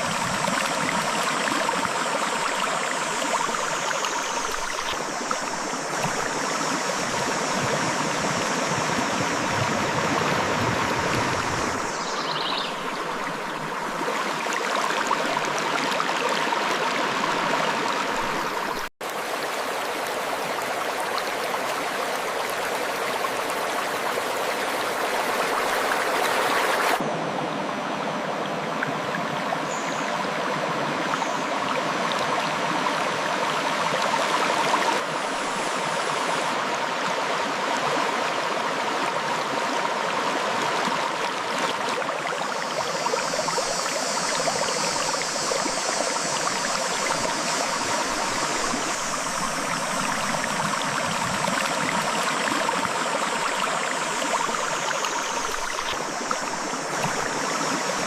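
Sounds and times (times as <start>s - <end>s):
river water rushing over rocks: 32.0s - 58.0s.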